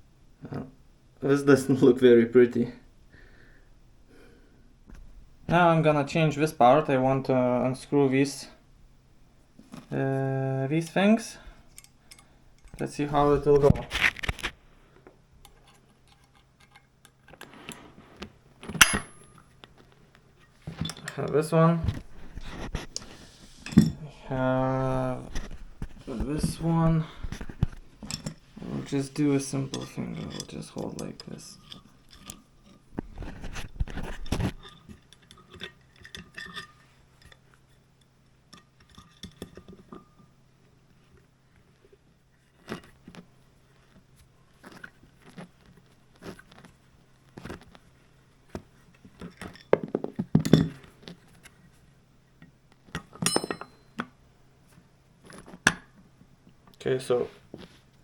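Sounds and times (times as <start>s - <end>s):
metal tools clinking and knocking: 11.7s - 12.9s, 15.4s - 17.3s, 18.6s - 19.6s, 20.4s - 21.4s, 29.4s - 32.8s, 34.6s - 37.4s, 53.1s - 54.0s
sharp metal clink: 18.8s - 19.4s, 53.2s - 53.9s.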